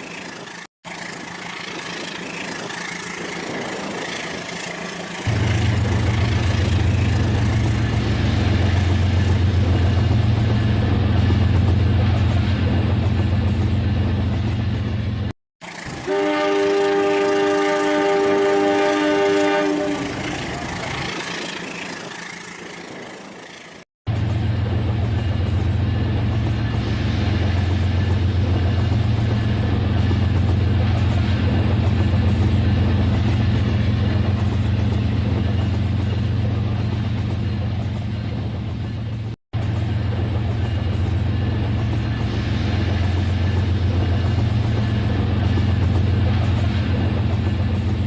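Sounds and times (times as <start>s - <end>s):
train rattling on track: 0.0s - 48.0s
train horn: 16.0s - 20.5s.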